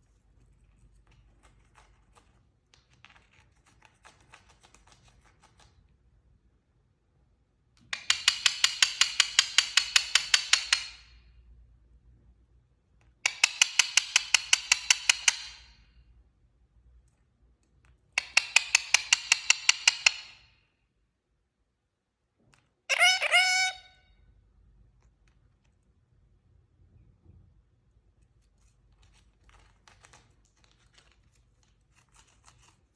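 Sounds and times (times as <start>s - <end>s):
parrot clicking trill: 7.9s - 11.0s, 13.2s - 15.7s, 18.2s - 20.5s, 22.9s - 24.0s.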